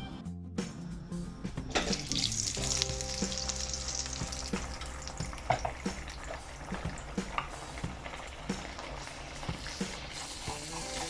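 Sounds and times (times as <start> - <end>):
batter deep-frying in oil: 1.7 - 11.0
oil crackling: 1.7 - 11.0.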